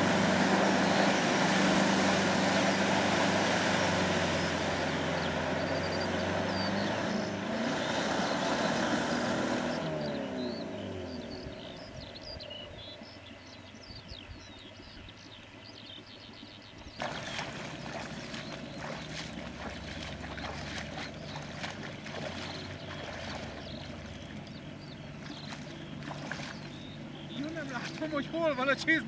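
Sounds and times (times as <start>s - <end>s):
water splashing and sloshing: 0.0s - 8.4s, 15.4s - 29.0s
birds chirping: 0.0s - 29.0s
low engine hum: 0.0s - 29.0s.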